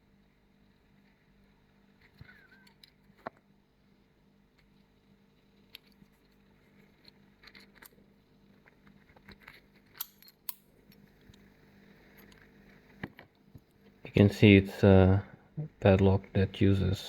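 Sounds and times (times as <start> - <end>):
padlock and key clicks: 9.9 - 10.6.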